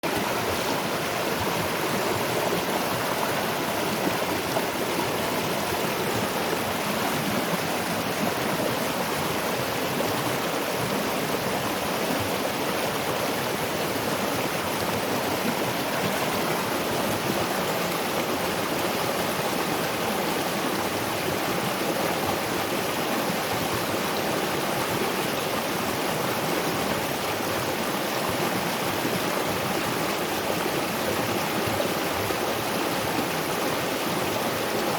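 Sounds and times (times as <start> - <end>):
waterfall and river rushing: 0.0 - 34.9.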